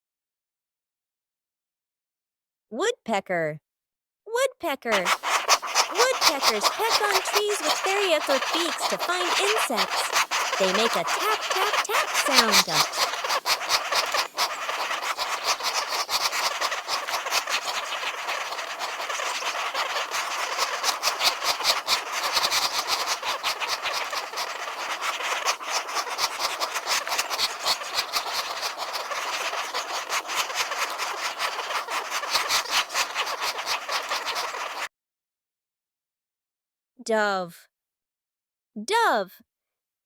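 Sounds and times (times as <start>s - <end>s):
woodpecker pecking on wood: 4.9s - 34.9s.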